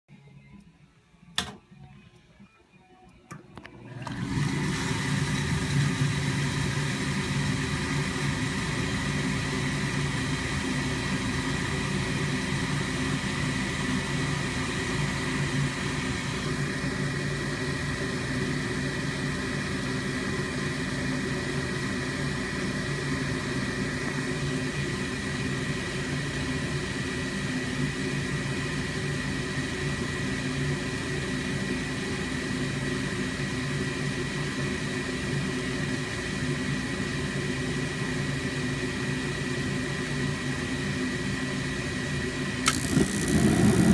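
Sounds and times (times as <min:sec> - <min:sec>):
furnace mechanical hum: 0:00.1 - 0:43.9.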